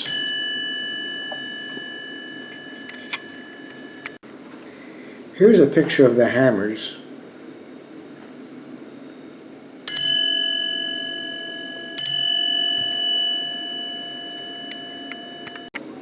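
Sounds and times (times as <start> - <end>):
clock bell struck by hammer: 0.0 - 4.2, 9.9 - 15.8.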